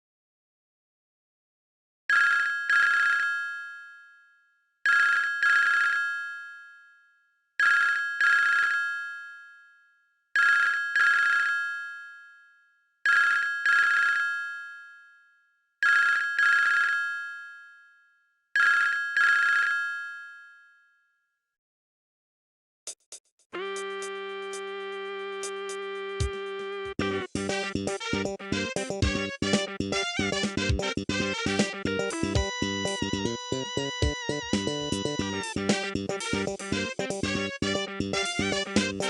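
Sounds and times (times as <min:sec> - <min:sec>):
telephone bell ringtone: 0:02.1 - 0:09.8, 0:28.7 - 0:37.6.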